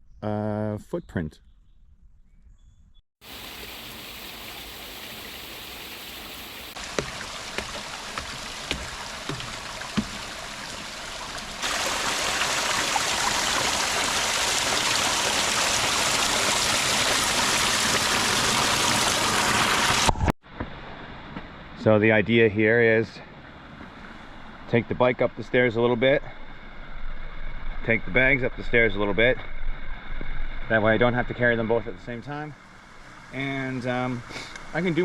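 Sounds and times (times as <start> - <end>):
running water rushing: 3.2 - 20.3, 32.5 - 35.0.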